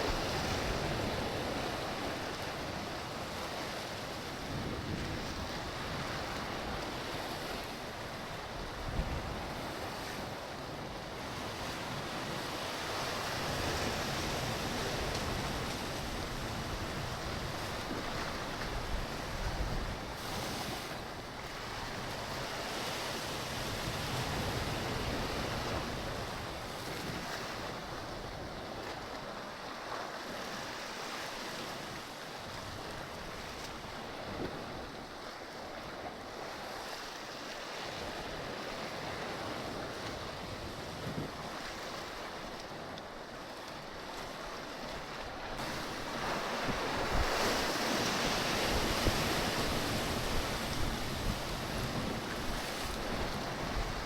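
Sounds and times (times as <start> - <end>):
surf on rocky shore: 0.0 - 54.0
wind buffeting microphone: 38.0 - 43.0, 44.0 - 54.0.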